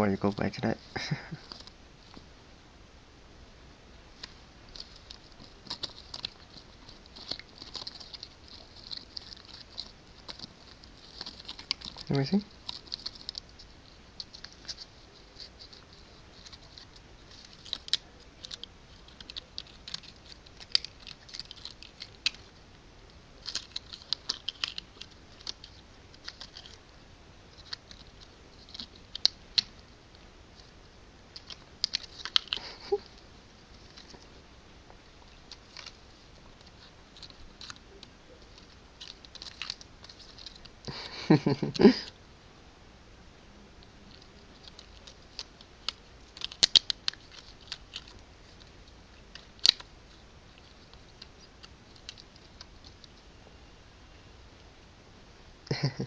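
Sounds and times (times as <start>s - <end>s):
cat scratching and clicking: 4.2s - 22.6s, 23.4s - 26.9s, 27.5s - 34.2s, 35.2s - 41.0s, 44.1s - 53.1s.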